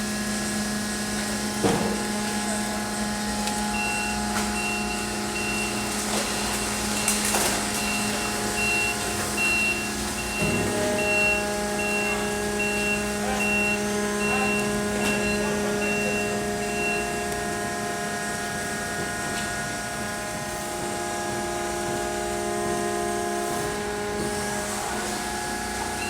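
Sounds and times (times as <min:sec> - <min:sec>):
baler machinery humming: 0:00.0 - 0:26.0
high warning beeper: 0:03.7 - 0:17.6.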